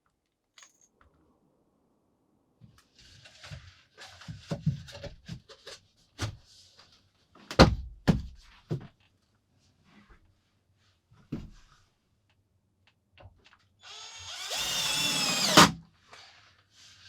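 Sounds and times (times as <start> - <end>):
wooden knocks and thuds: 7.5 - 8.9.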